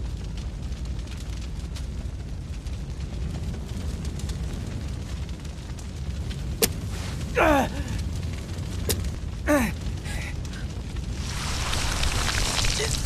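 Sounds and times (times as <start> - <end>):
low rumble: 0.0 - 13.0
sharp cracks: 6.1 - 13.0.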